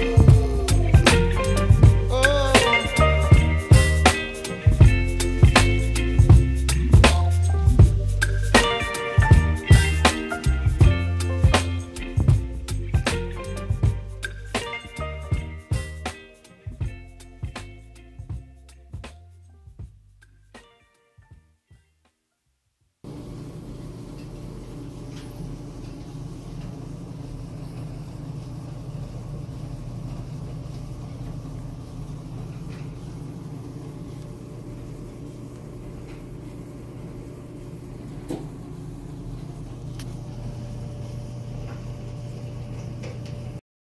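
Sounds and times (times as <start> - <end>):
clothes dryer humming: 0.0 - 19.1, 23.0 - 43.6.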